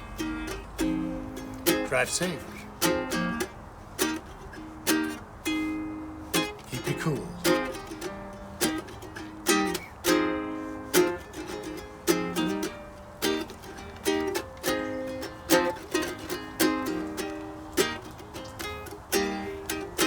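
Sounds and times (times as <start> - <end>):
strummed plucked-string tune: 0.0 - 20.0.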